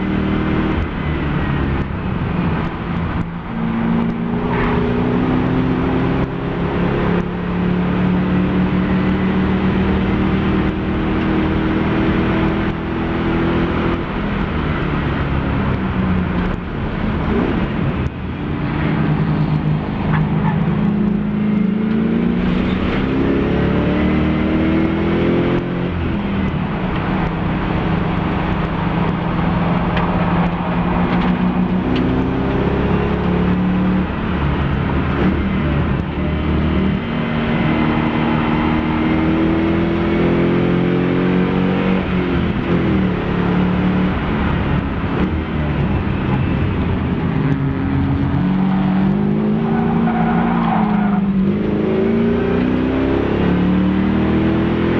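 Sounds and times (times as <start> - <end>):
race car engine accelerating: 18.7 - 26.0, 27.0 - 54.9.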